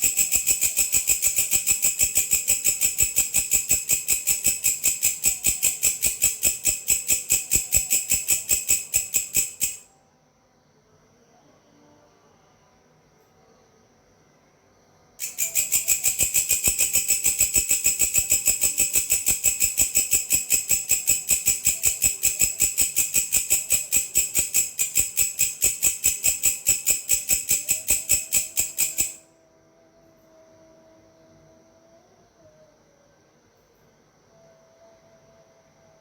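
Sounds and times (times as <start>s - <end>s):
grasshopper chirping: 0.0s - 9.9s, 15.2s - 29.2s.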